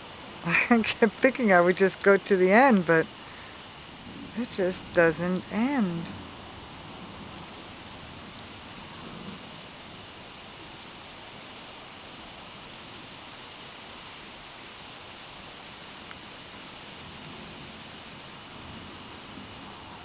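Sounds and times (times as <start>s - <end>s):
background hiss: 0.0s - 11.4s.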